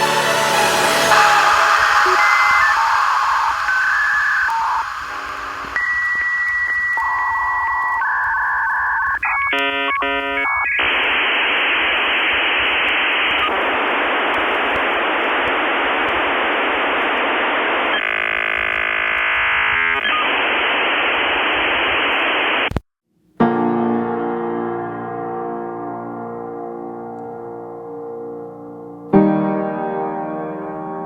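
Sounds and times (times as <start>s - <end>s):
dial-up modem beeping tones: 1.1s - 22.8s
dialing tones: 1.1s - 22.8s
piano-like background music: 23.4s - 31.0s.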